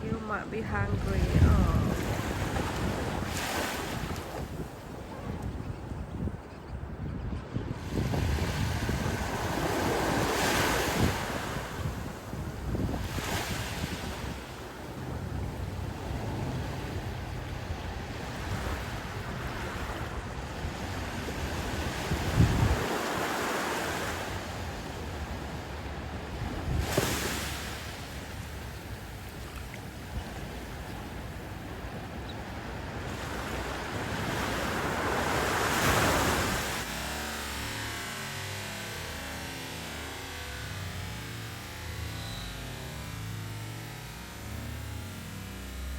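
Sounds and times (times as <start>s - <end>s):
ocean surf washing on beach: 0.0s - 5.5s, 7.7s - 37.3s
wind rumbling on microphone: 0.0s - 36.9s.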